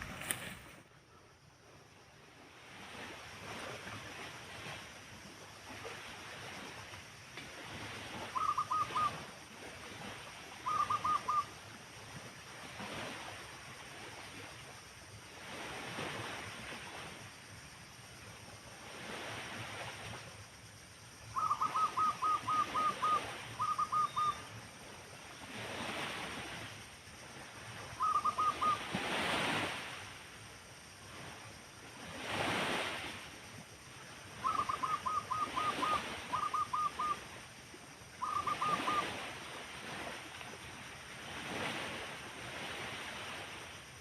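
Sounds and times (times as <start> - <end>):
wind gusts: 0.0 - 43.9
dove calling: 8.3 - 9.2, 10.6 - 11.5, 21.3 - 24.4, 28.0 - 28.8, 34.4 - 37.2, 38.2 - 39.1.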